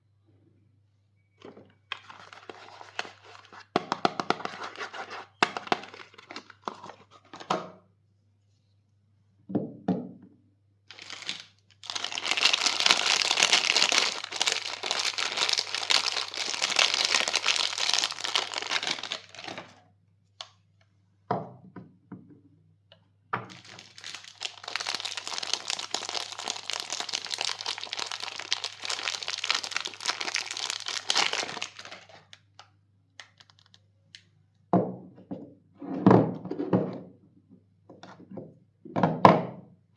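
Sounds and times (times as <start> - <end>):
soap wrappers crinkling and tearing: 1.9 - 7.3, 10.9 - 19.8, 23.5 - 33.9.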